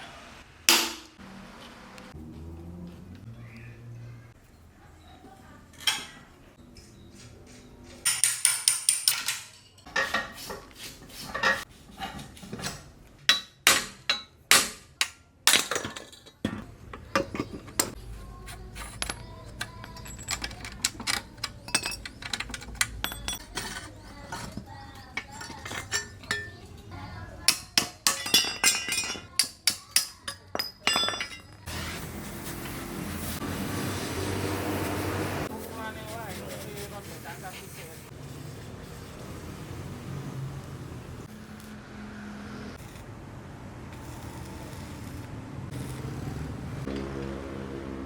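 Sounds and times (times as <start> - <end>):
metal tools clinking: 8.0 - 10.2, 15.5 - 26.9, 27.5 - 31.7.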